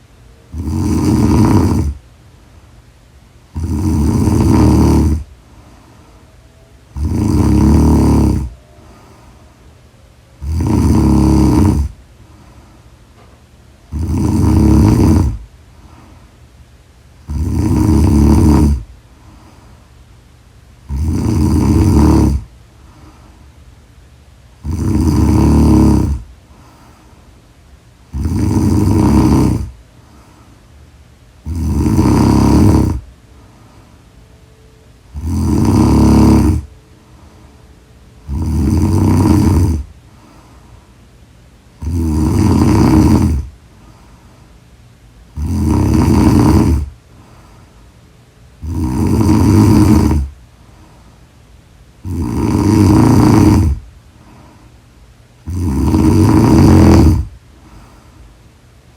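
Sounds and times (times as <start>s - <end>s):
person snoring: 0.5s - 2.0s, 3.5s - 6.1s, 6.9s - 9.4s, 10.4s - 12.8s, 13.9s - 16.2s, 17.2s - 19.8s, 20.8s - 23.2s, 24.6s - 27.0s, 28.1s - 30.4s, 31.4s - 33.1s, 35.1s - 37.3s, 38.2s - 40.7s, 41.8s - 44.1s, 45.3s - 47.6s, 48.6s - 50.4s, 52.0s - 54.6s, 55.4s - 58.0s.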